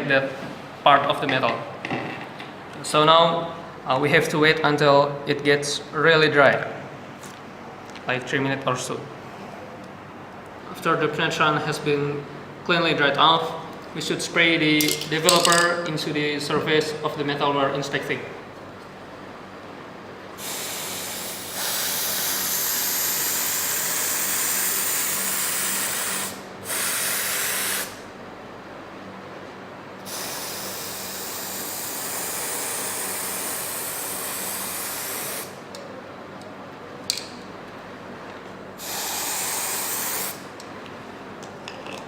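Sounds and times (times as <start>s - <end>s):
aerosol can spraying: 20.4s - 28.0s, 30.1s - 35.6s, 38.8s - 40.4s.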